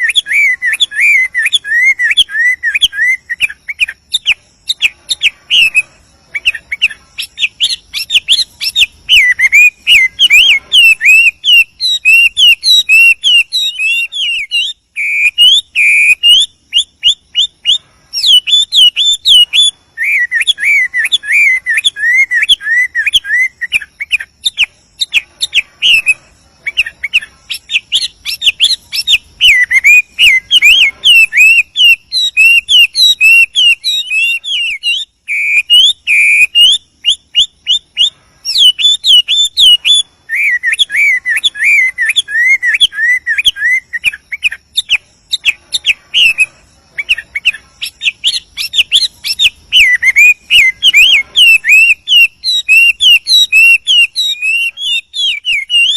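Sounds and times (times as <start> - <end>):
bird singing whistled phrases: 0.0 - 55.9.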